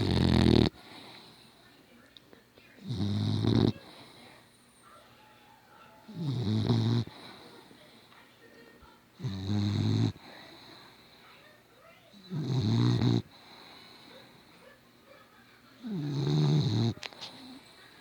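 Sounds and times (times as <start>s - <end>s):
dog snoring loudly: 0.0s - 0.9s, 2.8s - 3.8s, 6.1s - 7.2s, 9.2s - 10.2s, 12.3s - 13.5s, 15.8s - 17.0s
dog breathing: 0.0s - 1.7s, 2.8s - 4.6s, 6.1s - 8.3s, 9.2s - 11.6s, 12.2s - 14.8s.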